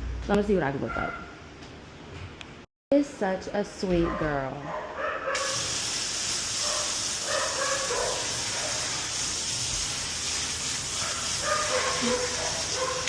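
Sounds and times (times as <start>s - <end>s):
water spraying onto dog: 5.4s - 13.0s.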